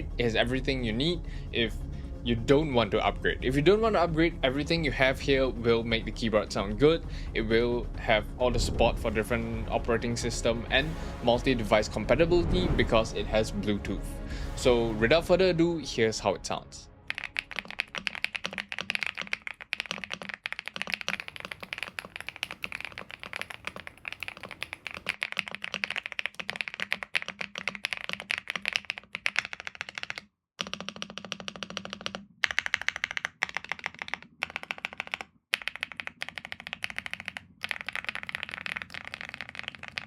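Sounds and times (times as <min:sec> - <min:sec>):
fast typing on mechanical keyboard: 0:17.1 - 0:40.0.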